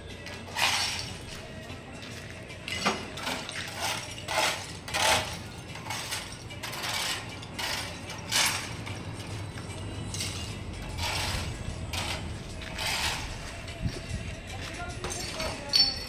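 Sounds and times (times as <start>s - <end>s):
hand tools scraping tiles: 0.4s - 1.2s, 2.8s - 13.8s.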